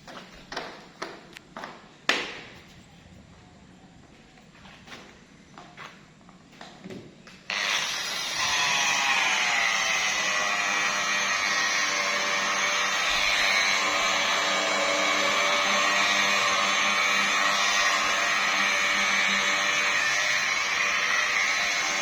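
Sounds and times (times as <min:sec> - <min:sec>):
polishing machine running: 0:07.5 - 0:22.0.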